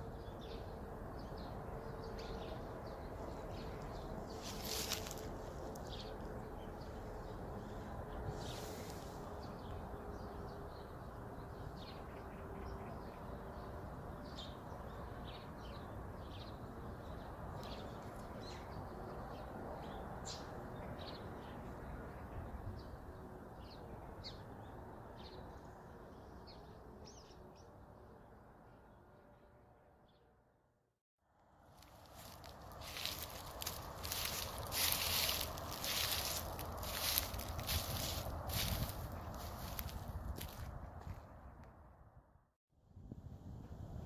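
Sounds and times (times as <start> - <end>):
small birds chirping: 31.8 - 40.6.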